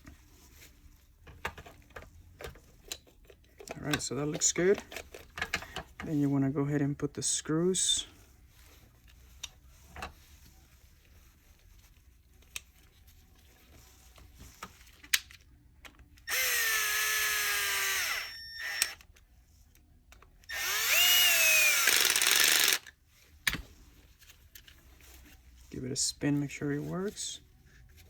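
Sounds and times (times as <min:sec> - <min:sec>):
power screwdriver whine: 0:16.3 - 0:19.0, 0:20.5 - 0:22.9.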